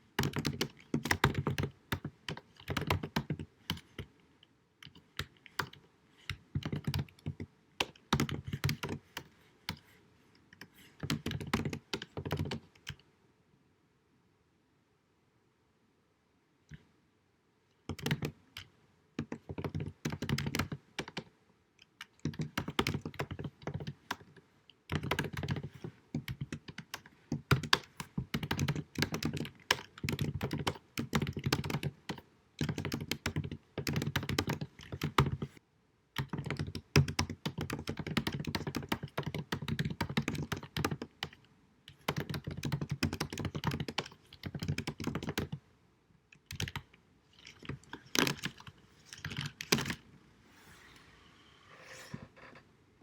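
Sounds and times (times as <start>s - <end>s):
fast keyboard typing: 0.1s - 4.1s, 4.8s - 9.9s, 10.5s - 13.0s, 17.9s - 21.3s, 22.0s - 35.6s, 36.2s - 45.6s, 46.4s - 50.0s.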